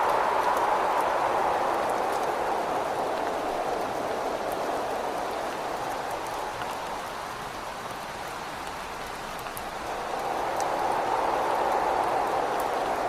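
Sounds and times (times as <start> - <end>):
rain hissing: 0.0 - 13.0
raindrops ticking: 8.6 - 13.0
wind rushing: 9.6 - 13.0.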